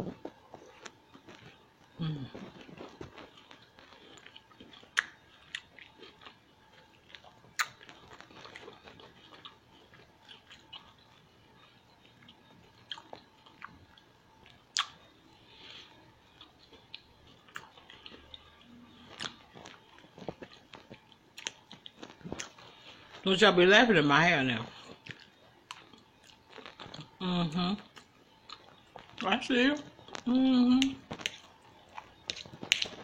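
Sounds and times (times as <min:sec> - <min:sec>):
person chewing food: 0:00.0 - 0:23.2, 0:24.6 - 0:27.2, 0:27.8 - 0:29.2, 0:29.8 - 0:33.0
mouth clicks and smacks: 0:14.7 - 0:15.0, 0:32.2 - 0:33.0.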